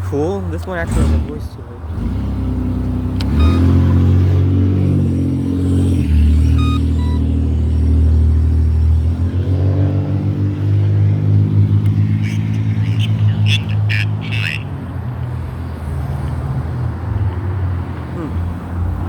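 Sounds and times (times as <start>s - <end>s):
car engine revving: 0.8s - 13.6s
crosswalk signal beeps: 3.3s - 4.0s, 6.3s - 7.3s.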